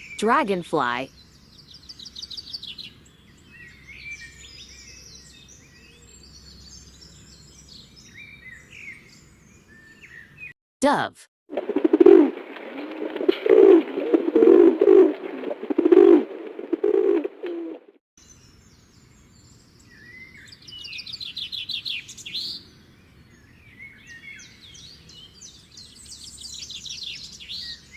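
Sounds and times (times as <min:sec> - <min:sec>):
songbird chirping and trilling: 0:00.0 - 0:10.5, 0:18.2 - 0:27.9
dove cooing: 0:13.4 - 0:17.8.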